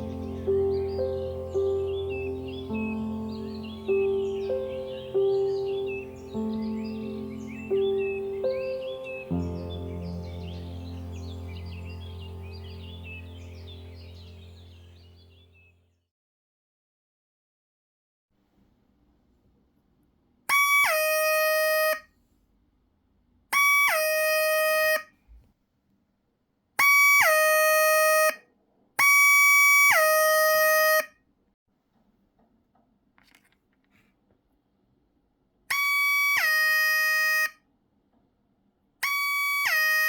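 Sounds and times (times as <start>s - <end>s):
buzzy electronic siren: 20.5s - 22.0s, 23.6s - 25.1s, 26.8s - 28.4s, 29.0s - 31.1s, 35.7s - 37.6s, 39.0s - 40.0s.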